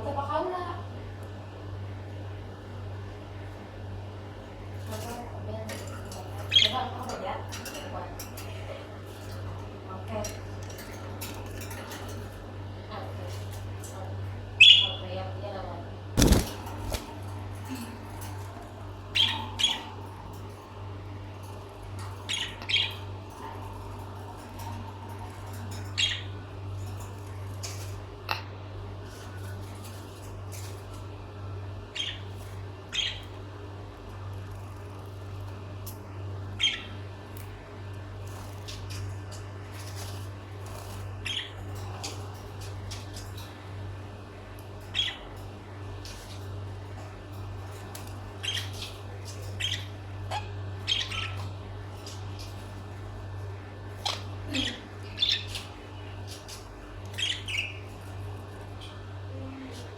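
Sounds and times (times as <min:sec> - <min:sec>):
steady low hum: 0:00.0 - 0:59.9
lovebirds squawking and chirping: 0:05.8 - 0:07.6, 0:14.6 - 0:15.0, 0:16.2 - 0:17.9, 0:19.0 - 0:20.3, 0:21.9 - 0:27.0, 0:31.9 - 0:33.4, 0:36.5 - 0:37.2, 0:38.6 - 0:43.6, 0:44.9 - 0:45.5, 0:47.7 - 0:53.0, 0:53.6 - 0:59.1
lovebirds squawking chirps: 0:14.6 - 0:15.0, 0:19.0 - 0:20.2, 0:22.2 - 0:23.2, 0:48.3 - 0:52.5, 0:54.0 - 0:58.2.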